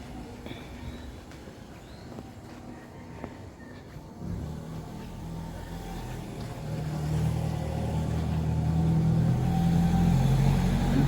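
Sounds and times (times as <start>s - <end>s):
vehicle engine approaching: 4.1s - 11.0s.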